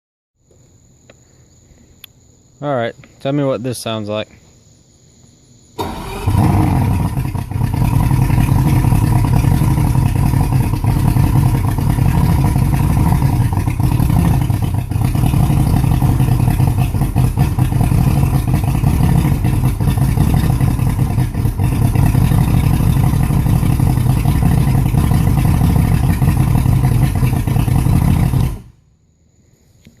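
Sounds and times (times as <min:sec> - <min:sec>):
outboard motor idling rough: 0:05.8 - 0:28.8.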